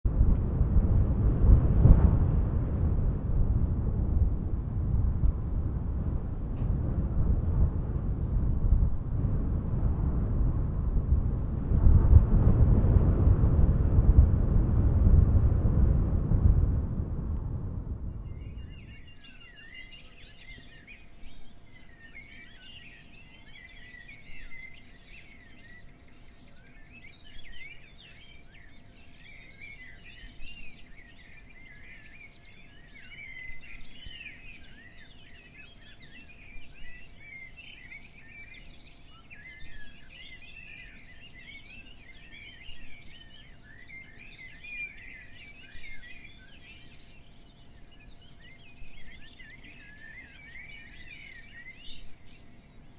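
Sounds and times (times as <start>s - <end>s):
small birds chirping: 17.9s - 52.9s.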